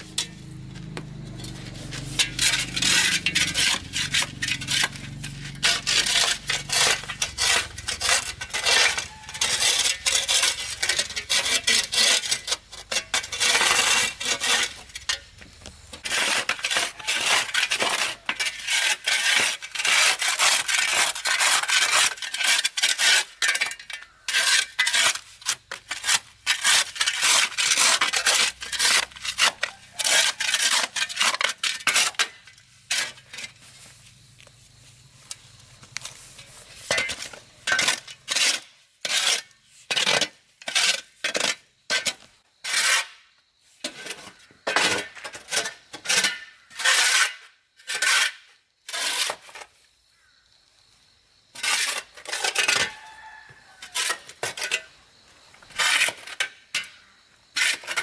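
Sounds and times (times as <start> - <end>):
rough scraping on hard surface: 0.0 - 49.7, 51.6 - 56.6.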